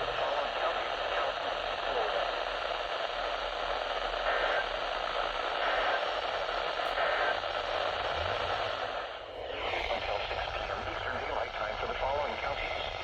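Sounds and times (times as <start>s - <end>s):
radio static hiss: 0.0s - 13.0s.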